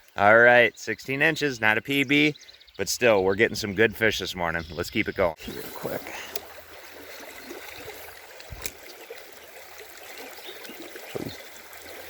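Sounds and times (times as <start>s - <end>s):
stream water running: 5.3s - 12.0s.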